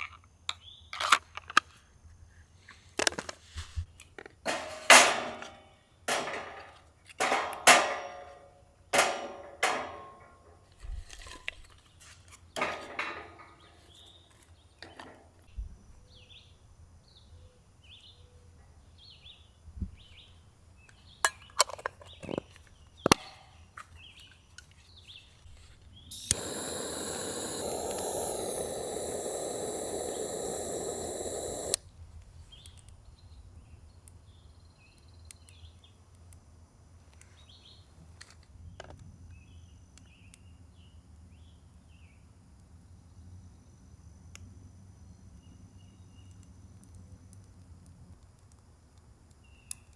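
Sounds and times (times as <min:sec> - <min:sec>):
small birds chirping: 0:26.0 - 0:31.8
steady hissing rush: 0:26.1 - 0:31.8.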